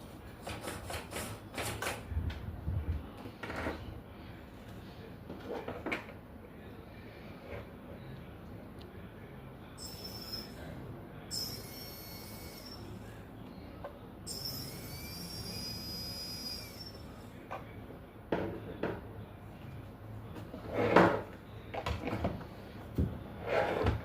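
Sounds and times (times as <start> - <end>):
high-pitched electric motor whine: 9.8 - 10.7, 11.3 - 13.0, 14.3 - 17.2.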